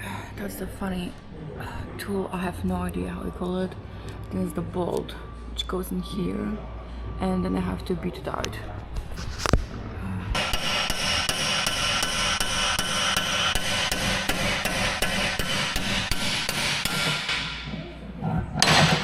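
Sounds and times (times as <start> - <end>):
hammer blows on metal: 10.4 - 17.7.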